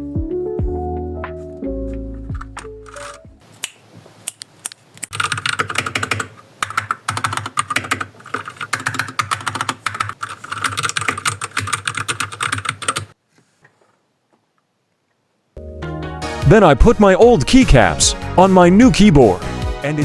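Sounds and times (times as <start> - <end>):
mechanical keyboard typing: 2.3 - 3.2, 5.0 - 13.2.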